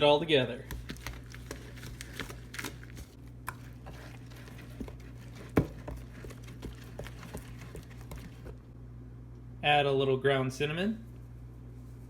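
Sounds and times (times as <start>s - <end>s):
utensil scraping bowl: 0.6s - 8.6s.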